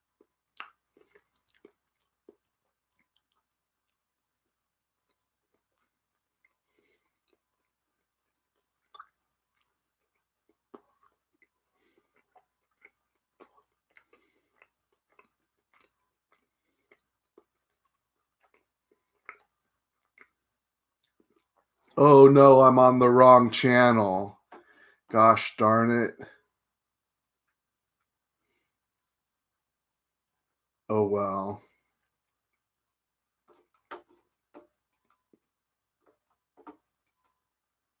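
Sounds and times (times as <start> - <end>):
mouth clicks and smacks: 0.0 - 4.0, 5.0 - 20.4
faint chewing: 0.0 - 22.0, 33.4 - 37.5
faint irregular clicks and taps: 24.5 - 24.8, 33.4 - 37.4.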